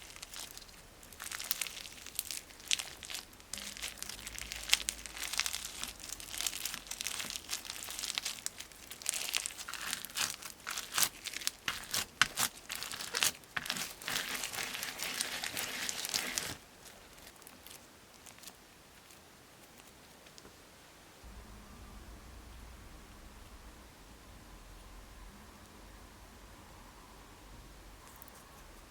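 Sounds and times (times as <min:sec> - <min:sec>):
floral foam crunching: 0:00.0 - 0:19.2.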